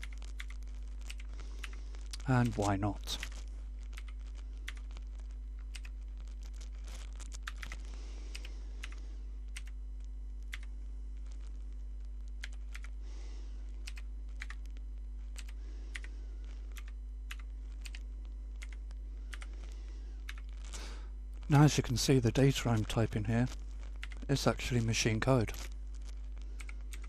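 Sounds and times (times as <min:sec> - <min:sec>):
low electrical hum: 0:00.0 - 0:27.0
typing on mechanical keyboard: 0:13.8 - 0:14.6.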